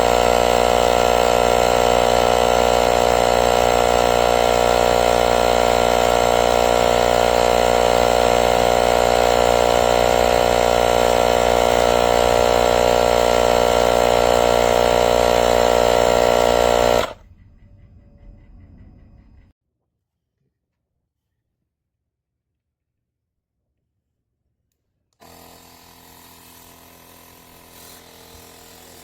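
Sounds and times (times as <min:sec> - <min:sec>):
portable air compressor running: 0:00.0 - 0:17.2, 0:25.2 - 0:29.0.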